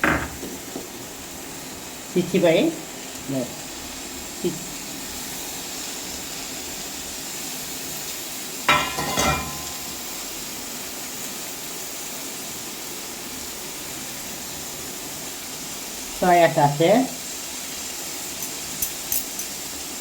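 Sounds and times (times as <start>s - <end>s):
masala sizzling in a pan: 0.0s - 20.0s
sharp metal clink: 8.7s - 10.0s, 18.4s - 19.6s.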